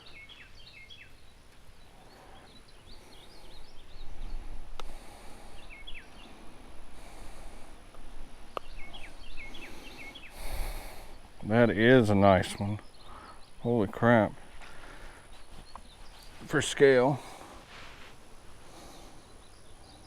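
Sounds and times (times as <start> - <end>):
songbird chirping: 0.0 - 20.0
wind buffeting microphone: 3.5 - 13.0.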